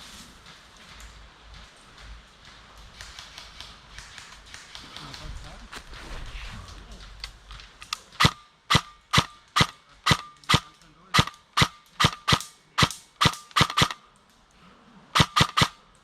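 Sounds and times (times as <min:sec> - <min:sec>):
airsoft gun shots: 0:08.2 - 0:14.0, 0:15.2 - 0:15.8.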